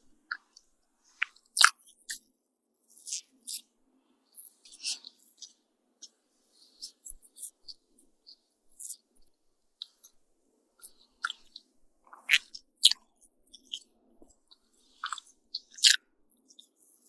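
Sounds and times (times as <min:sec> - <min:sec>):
close chewing mouth sounds: 0:10.8 - 0:13.9, 0:14.5 - 0:17.0.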